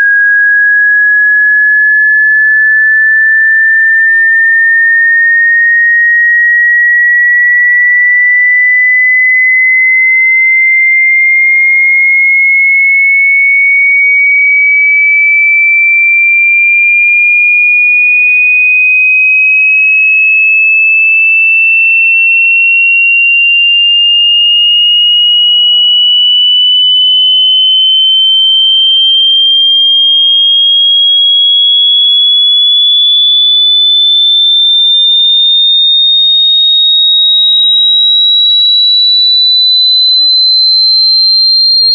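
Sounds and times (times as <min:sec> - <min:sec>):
sine tone sweeping upward: 0:22.0 - 0:41.9.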